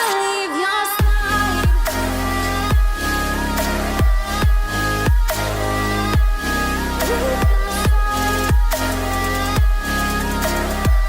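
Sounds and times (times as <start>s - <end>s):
electronic dance music: 0.0s - 11.0s
heavy bass drum beat: 1.0s - 3.0s, 3.8s - 10.0s
sustained synth chords: 5.1s - 8.8s.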